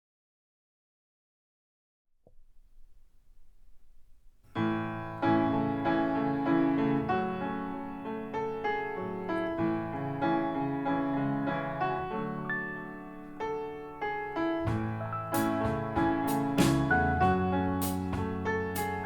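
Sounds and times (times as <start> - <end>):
piano music over loudspeakers: 4.5 - 19.0.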